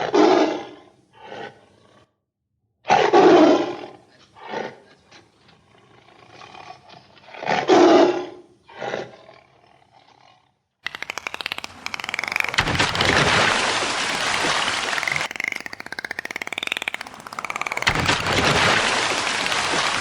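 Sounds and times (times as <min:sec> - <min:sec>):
big cat roaring: 0:03.2 - 0:10.6
fast rattling noise: 0:10.8 - 0:20.0.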